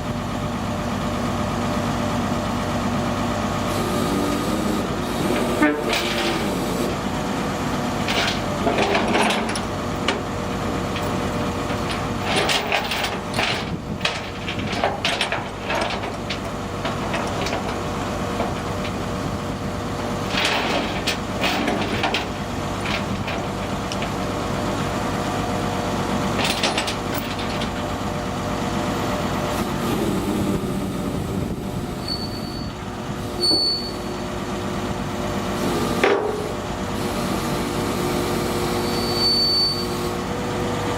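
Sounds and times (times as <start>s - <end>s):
heavy truck engine running: 0.0s - 40.9s
metallic knocks and clanks: 7.9s - 24.5s, 26.3s - 28.0s.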